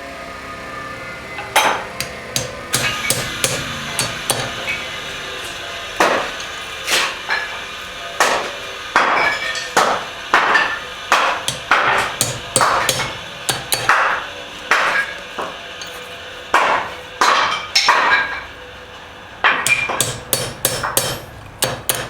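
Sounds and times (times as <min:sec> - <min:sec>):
hammer striking steel on anvil: 0:01.6 - 0:04.8, 0:06.0 - 0:07.5, 0:08.2 - 0:18.4, 0:19.4 - 0:22.0.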